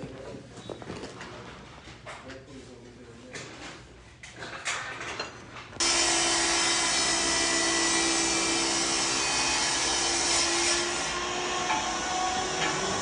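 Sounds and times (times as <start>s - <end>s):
power tool whining: 5.8s - 13.0s.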